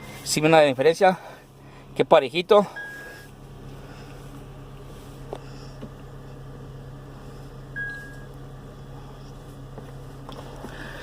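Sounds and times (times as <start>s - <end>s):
car engine idling: 0.0s - 11.0s
short beep: 2.8s - 3.3s, 7.8s - 8.3s.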